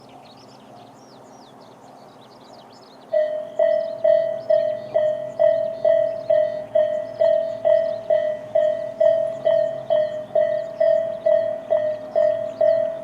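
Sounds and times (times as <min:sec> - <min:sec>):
level crossing alarm dinging: 0:03.1 - 0:13.0.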